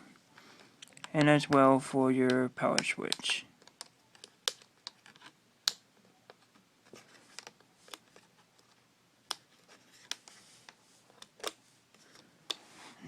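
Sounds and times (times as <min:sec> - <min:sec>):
small clicks on plastic laptop case: 0:02.7 - 0:06.5.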